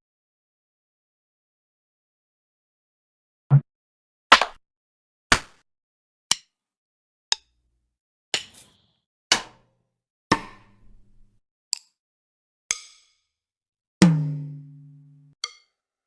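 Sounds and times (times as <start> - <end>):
drumstick strikes: 10.3 - 10.8.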